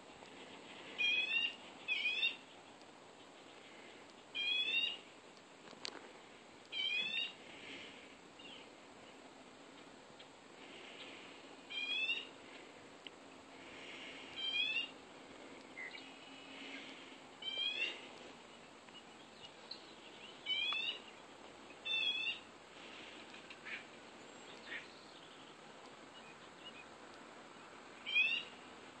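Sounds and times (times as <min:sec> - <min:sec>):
harsh bird calls: 0:00.3 - 0:02.6, 0:03.2 - 0:05.0, 0:06.7 - 0:09.2, 0:10.2 - 0:12.4, 0:13.6 - 0:26.9, 0:28.0 - 0:28.6.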